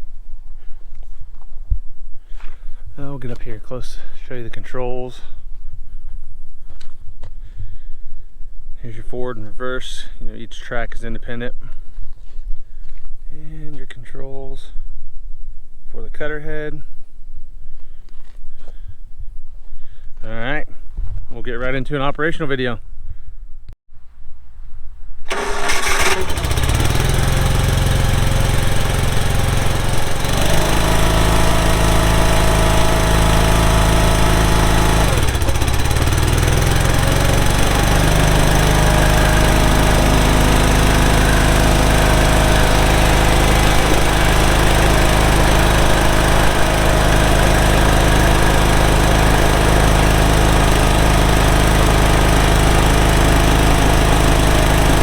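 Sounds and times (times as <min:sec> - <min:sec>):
gas engine starting and running: 0:25.3 - 0:55.0.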